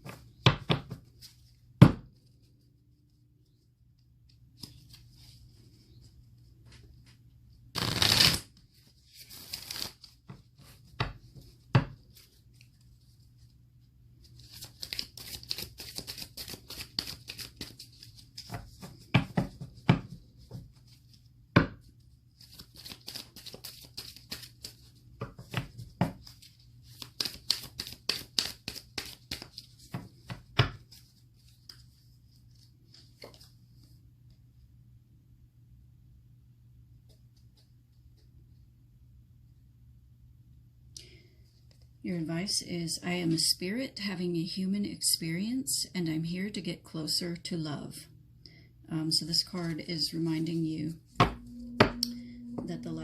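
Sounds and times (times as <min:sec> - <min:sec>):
cards being shuffled: 0:04.3 - 0:05.4, 0:07.8 - 0:13.5, 0:14.2 - 0:21.3, 0:21.9 - 0:33.6.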